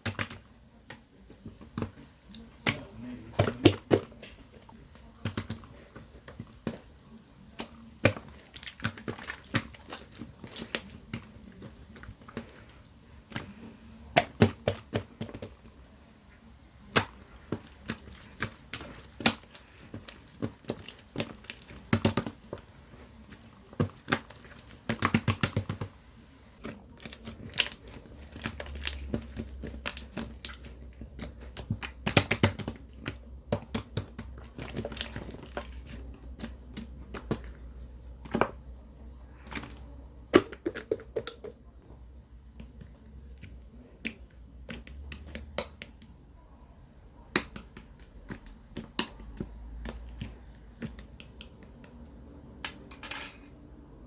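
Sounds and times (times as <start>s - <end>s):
objects clicking and tapping: 47.4s - 53.5s.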